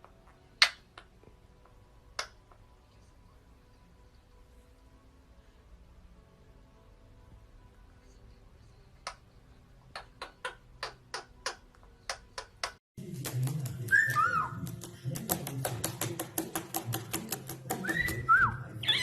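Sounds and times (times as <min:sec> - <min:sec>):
parrot clicking: 0:09.9 - 0:18.3
parrot whistled chirps: 0:13.9 - 0:14.6, 0:17.8 - 0:19.0.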